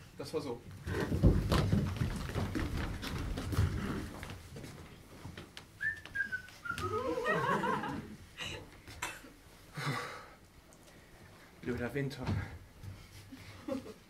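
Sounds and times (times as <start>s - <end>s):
person whistling: 5.8s - 7.1s.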